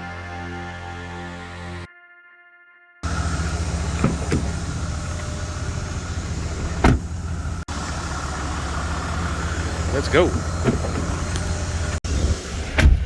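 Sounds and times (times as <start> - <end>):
car engine rumble: 3.0 - 13.0
road noise: 3.0 - 13.0.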